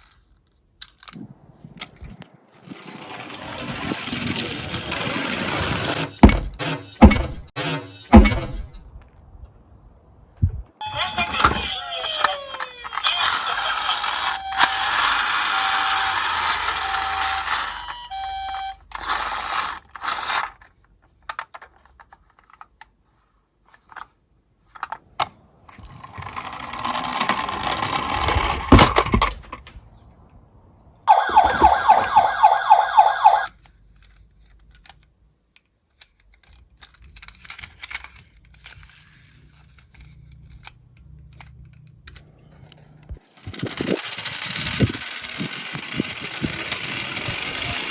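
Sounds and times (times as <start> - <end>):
toy cars rolling down a slope: 1.8 - 7.0, 11.0 - 22.7, 25.7 - 29.8, 36.0 - 40.7, 43.2 - 47.9
pulsing alarm tone: 31.1 - 33.5.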